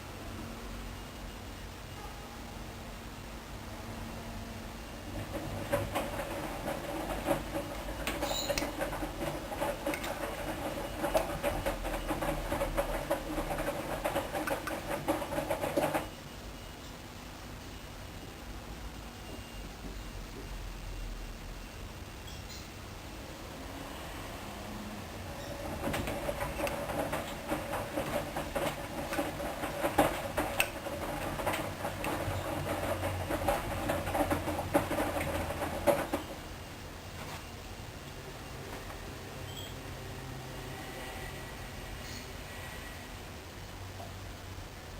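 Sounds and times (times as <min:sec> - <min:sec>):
washing machine drum turning: 0:05.1 - 0:16.1, 0:25.3 - 0:36.5
wet laundry knocking and sloshing: 0:25.7 - 0:36.3.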